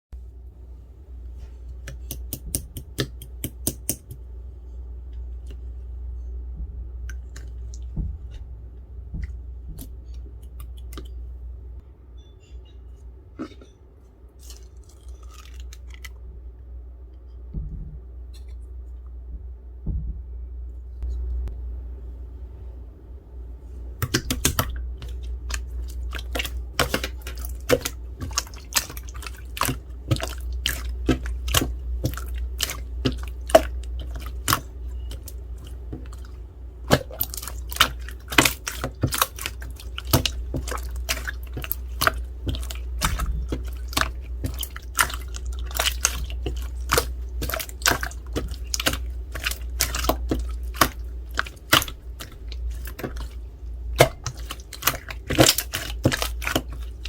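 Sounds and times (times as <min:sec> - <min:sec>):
low hum: 0:04.1 - 0:57.0
slime squishing wet pops: 0:24.0 - 0:53.4, 0:54.0 - 0:57.0.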